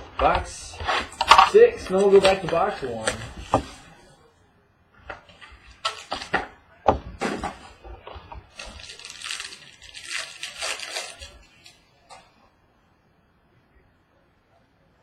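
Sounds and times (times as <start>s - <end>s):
plastic wrap crinkling: 8.5s - 11.8s.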